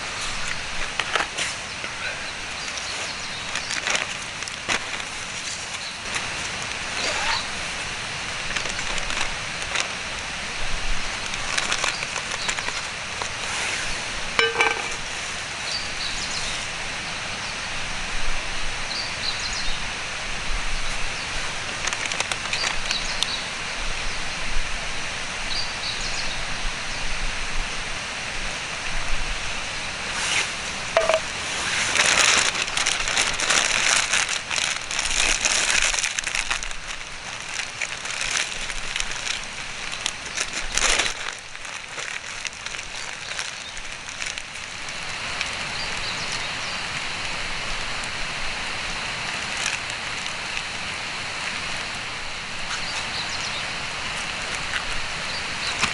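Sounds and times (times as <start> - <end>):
campfire crackling: 0.0 - 15.5, 30.1 - 55.9.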